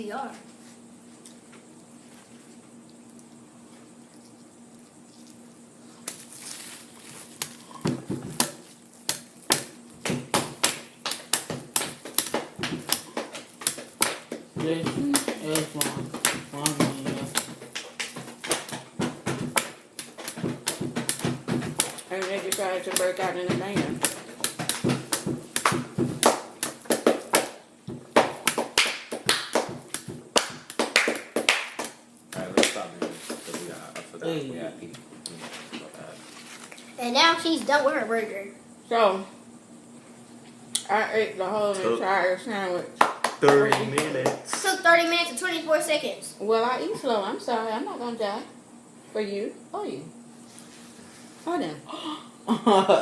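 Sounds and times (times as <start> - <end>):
taps and knocks drumming a beat: 9.5 - 34.1.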